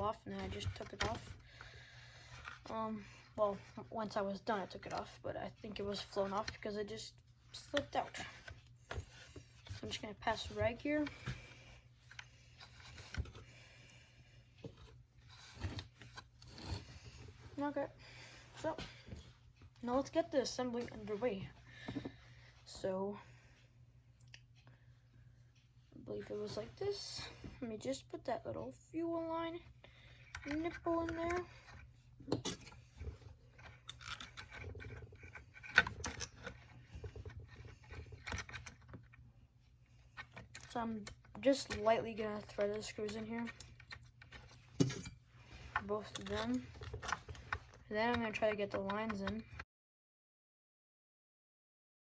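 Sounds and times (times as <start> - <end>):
small parts clicking and scraping: 30.2 - 39.2, 40.0 - 49.6.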